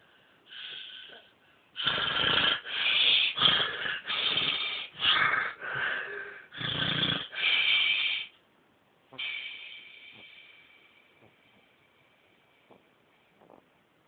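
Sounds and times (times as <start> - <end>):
person snoring: 0.6 - 8.3.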